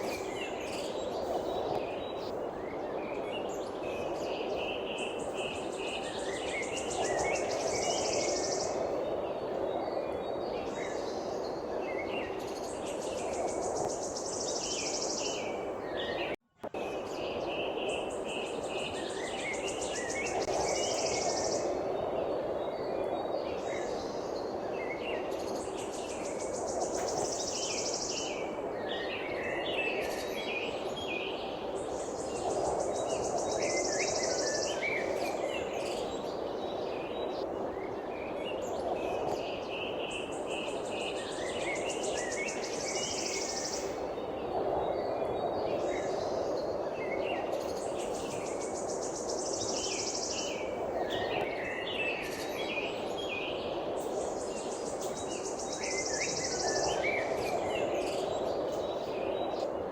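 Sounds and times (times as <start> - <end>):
birds chirping and twittering: 0.0 - 59.9
steady background hiss: 0.0 - 59.9.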